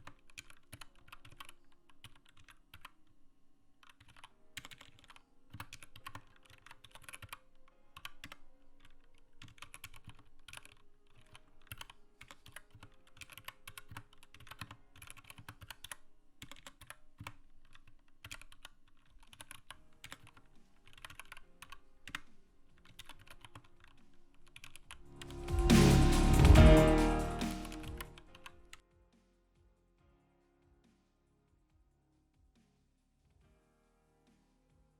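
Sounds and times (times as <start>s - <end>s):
mechanical keyboard typing: 0.0s - 3.2s, 3.8s - 25.4s.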